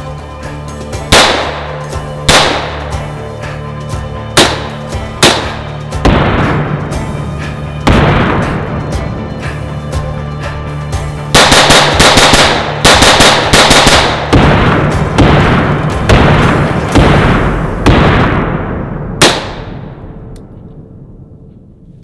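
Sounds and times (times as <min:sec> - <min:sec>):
rapid gunfire bursts: 0:11.4 - 0:18.3
heavy single gunshots echoing: 0:11.4 - 0:21.4.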